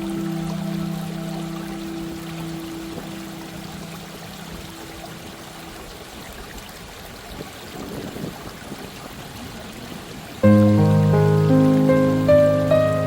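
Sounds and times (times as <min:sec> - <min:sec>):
loud sustained music chord: 0:00.0 - 0:05.3, 0:10.4 - 0:13.0
soft held music notes: 0:00.0 - 0:05.9, 0:10.4 - 0:13.0
waterfall rushing: 0:00.0 - 0:13.0.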